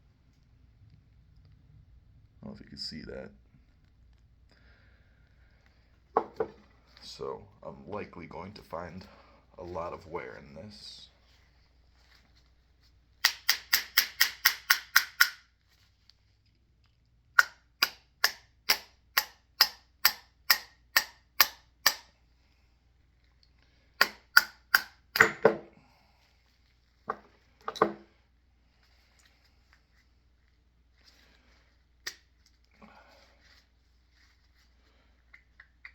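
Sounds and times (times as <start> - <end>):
sharp metallic tool clicks: 13.2 - 15.4, 17.4 - 22.1, 24.0 - 25.3.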